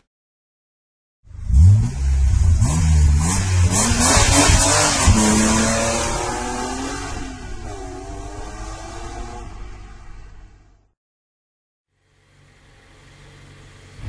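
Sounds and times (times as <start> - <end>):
car engine revving: 1.3 - 10.0.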